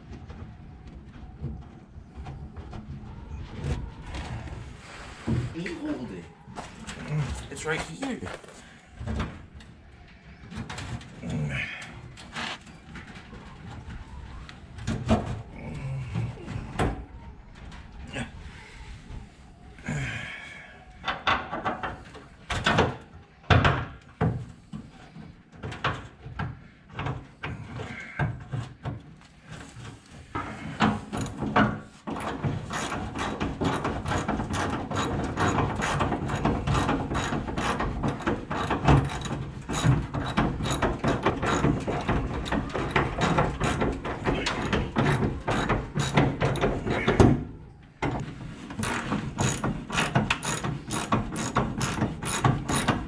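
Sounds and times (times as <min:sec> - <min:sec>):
hand ratchet clicking: 0:48.8 - 0:53.0.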